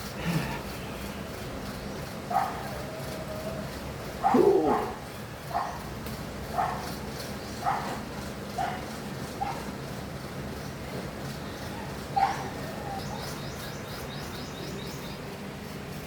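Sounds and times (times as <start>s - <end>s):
dog barking: 2.3s - 2.7s, 4.2s - 5.9s, 6.5s - 6.9s, 7.6s - 8.0s, 8.6s - 8.8s, 12.2s - 12.5s.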